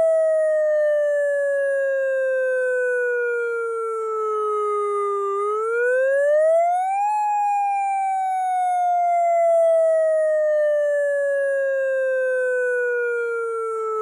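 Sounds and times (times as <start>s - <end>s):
siren wailing: 0.0s - 14.0s.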